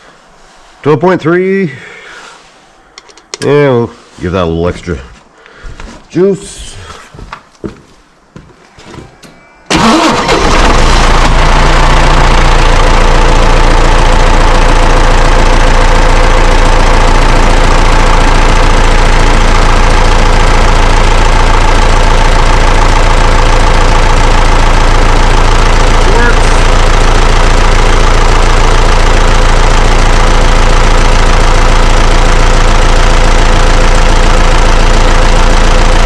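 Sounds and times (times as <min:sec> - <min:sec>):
tractor diesel engine starting: 0:09.4 - 0:36.0
diesel engine idling: 0:09.7 - 0:36.0.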